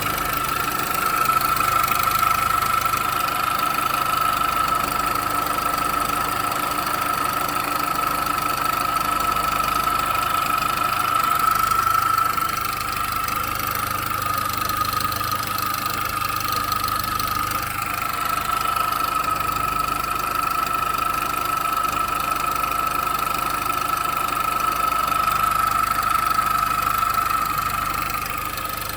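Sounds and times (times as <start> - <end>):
car engine idling: 0.0 - 28.9.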